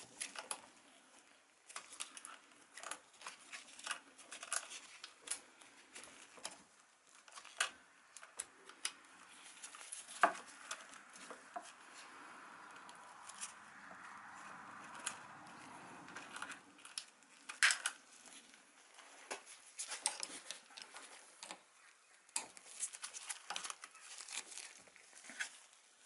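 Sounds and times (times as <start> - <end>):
handling clicks and rustling: 0.0 - 26.0.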